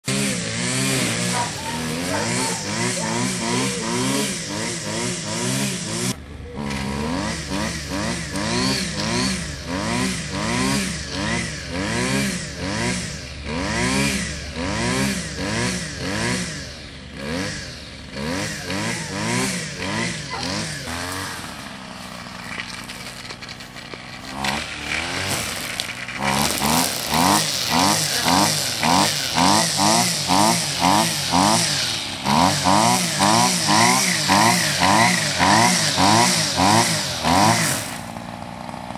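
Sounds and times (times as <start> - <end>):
engine revving: 0.0 - 38.9.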